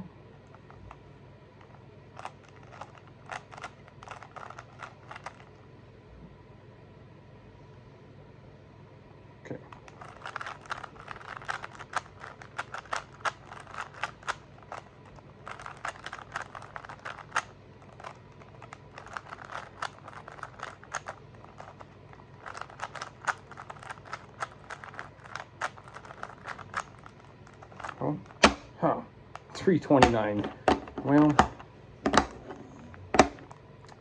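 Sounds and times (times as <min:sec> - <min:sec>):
puzzle cube plastic clicks: 0:01.6 - 0:05.5, 0:09.7 - 0:28.6.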